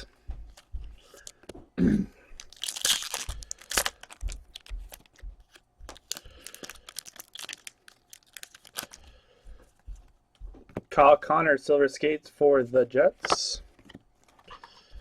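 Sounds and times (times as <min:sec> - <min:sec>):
wrapper rustling: 0:02.4 - 0:09.1.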